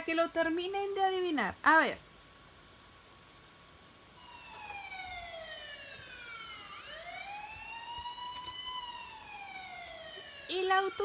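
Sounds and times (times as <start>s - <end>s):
police siren wailing: 4.2s - 11.0s.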